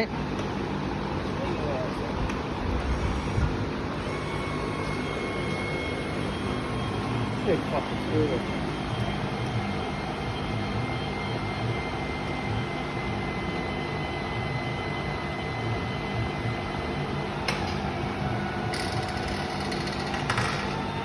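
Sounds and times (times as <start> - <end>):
electric motor whining: 2.6 - 13.6.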